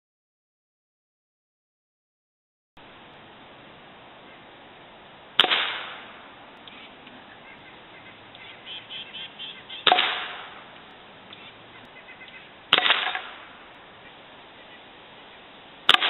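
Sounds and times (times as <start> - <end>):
air rifle shots: 5.4 - 6.2, 9.8 - 10.7, 12.7 - 13.6
faint short chirping calls: 6.6 - 10.0, 10.6 - 12.6.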